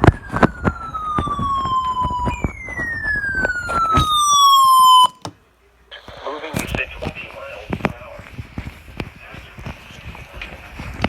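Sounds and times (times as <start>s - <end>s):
falling siren-like tone: 0.0s - 5.2s.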